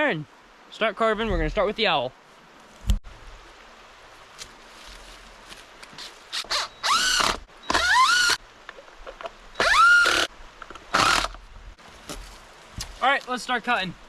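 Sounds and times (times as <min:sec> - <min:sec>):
power drill driving fasteners: 0:06.3 - 0:08.4, 0:09.6 - 0:10.3, 0:10.9 - 0:11.4.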